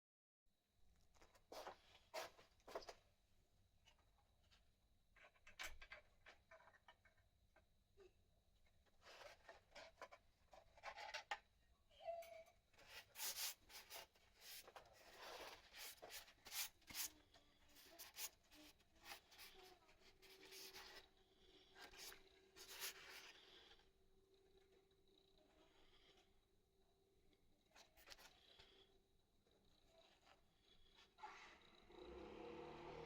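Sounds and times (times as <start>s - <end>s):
faint scraping and rubbing: 8.9s - 11.4s, 12.7s - 26.9s.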